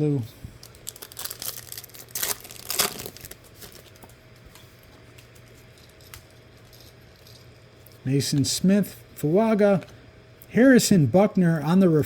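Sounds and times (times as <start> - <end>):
wrapper crinkling and tearing: 0.6 - 4.1.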